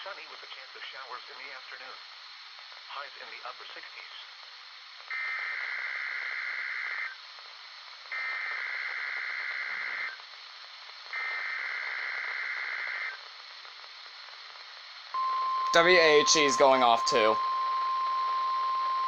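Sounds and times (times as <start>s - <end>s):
radio hiss: 0.0s - 19.0s
digital data tones: 15.2s - 19.0s.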